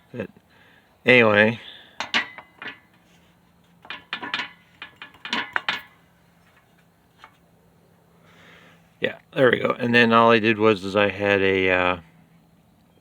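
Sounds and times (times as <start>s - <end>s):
metal tools clinking: 3.8s - 7.4s.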